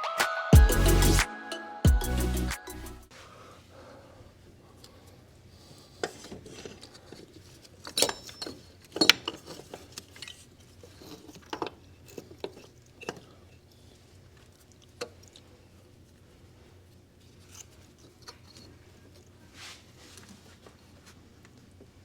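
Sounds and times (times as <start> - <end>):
metal tools clinking: 7.8 - 13.2.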